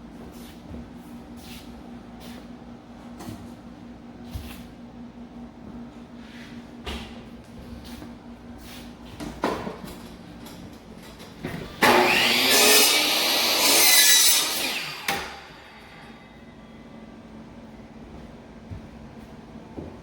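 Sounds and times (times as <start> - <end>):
saw cutting vinyl plank: 11.8 - 16.0.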